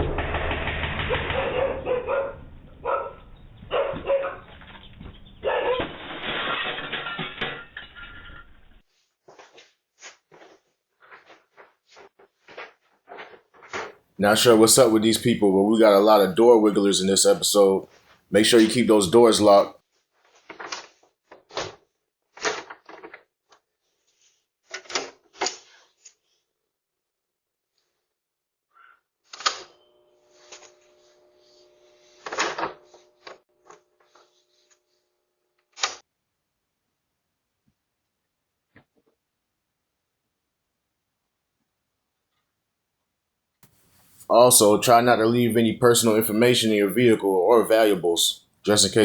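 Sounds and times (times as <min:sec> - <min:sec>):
dog barking: 0:01.1 - 0:04.5, 0:05.4 - 0:05.9.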